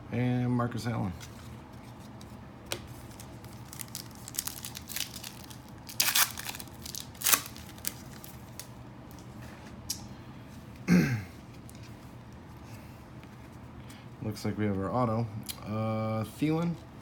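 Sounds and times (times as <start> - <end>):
cards rustling: 1.1 - 9.8
wrapper tearing and crinkling: 3.0 - 8.7.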